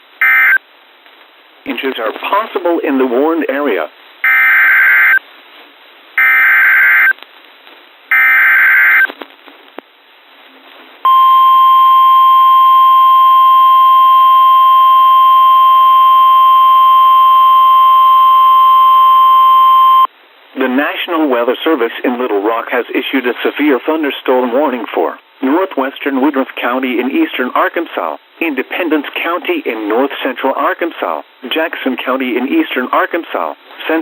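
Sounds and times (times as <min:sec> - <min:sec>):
steady warning alarm tone: 0:11.1 - 0:20.1.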